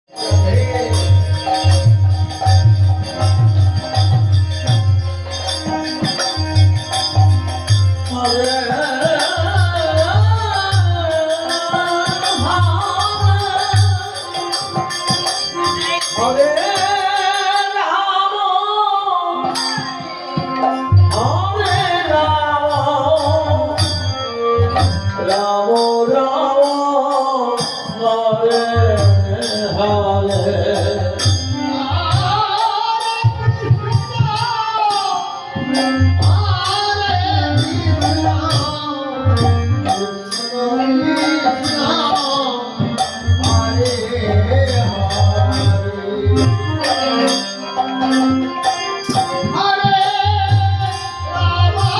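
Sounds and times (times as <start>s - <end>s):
jingling percussion: 0.0s - 17.8s, 19.4s - 51.9s
person singing: 0.1s - 2.0s, 15.2s - 20.3s.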